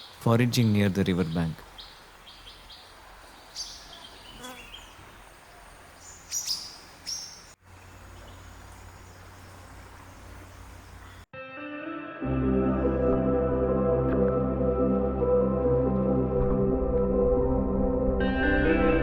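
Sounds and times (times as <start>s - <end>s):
high bird chirps: 0.0s - 5.1s, 6.0s - 11.3s
outdoor background: 0.0s - 11.4s
low hum: 12.4s - 19.0s.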